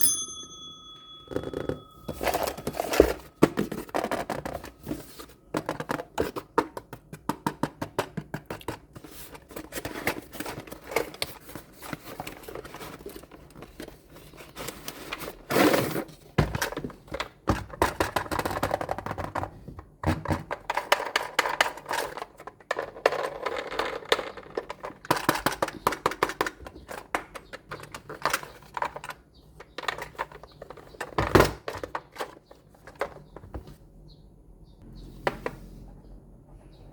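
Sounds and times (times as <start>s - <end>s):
clicks and taps of toy trucks: 16.6s - 33.5s.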